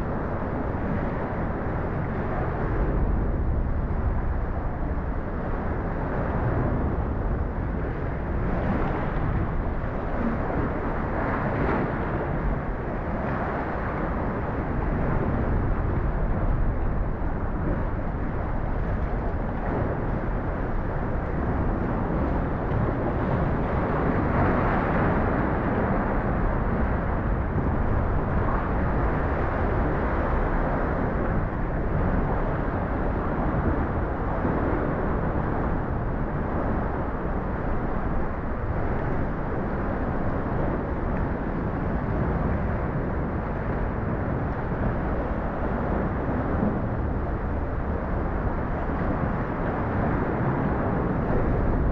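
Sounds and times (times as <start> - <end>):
sea water around a kayak: 0.0 - 51.9.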